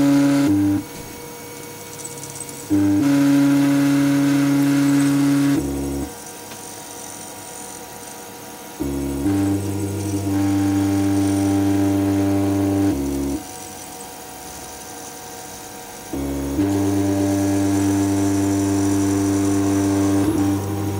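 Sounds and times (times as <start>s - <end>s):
brief motor tone: 0.0s - 20.9s
stepper motors whining: 0.0s - 20.9s.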